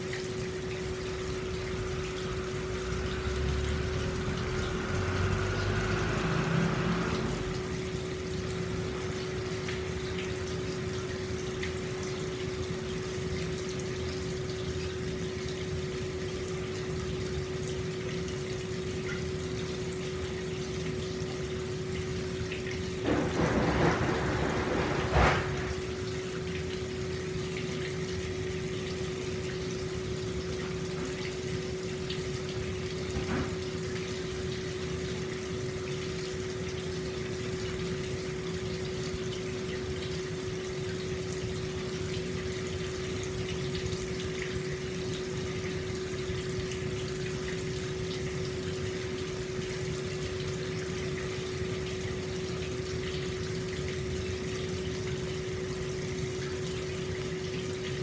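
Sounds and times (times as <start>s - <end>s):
water flowing into a bath: 0.0s - 58.0s
splashy water surge: 1.4s - 9.0s, 23.0s - 26.1s.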